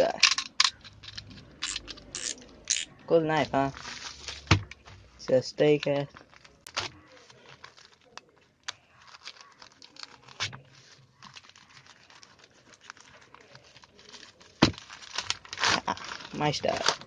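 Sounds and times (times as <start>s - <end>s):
packaging crinkling and tearing: 3.7s - 4.8s, 5.8s - 17.0s.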